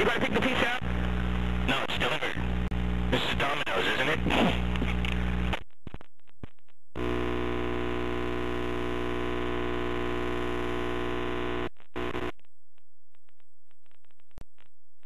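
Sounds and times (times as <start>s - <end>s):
buzzing telephone tone: 7.0s - 12.4s.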